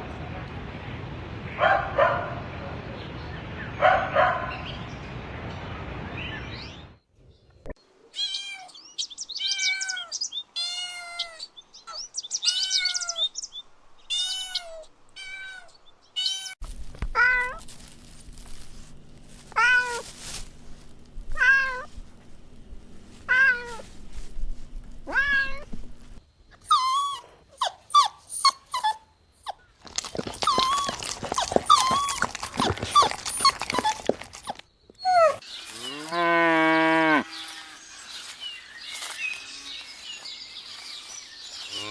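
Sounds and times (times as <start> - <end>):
puppies whimpering: 26.7 - 35.4.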